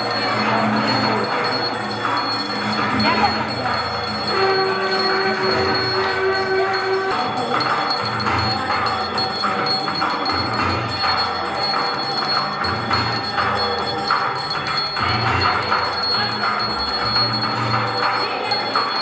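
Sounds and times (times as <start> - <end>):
temple bells ringing: 0.0 - 19.0
long held note: 4.1 - 8.2.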